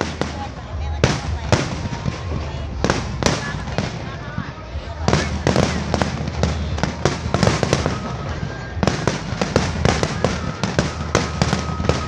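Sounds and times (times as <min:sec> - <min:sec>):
fireworks bursting: 0:00.0 - 0:12.0
thin steady whistle: 0:07.4 - 0:12.0.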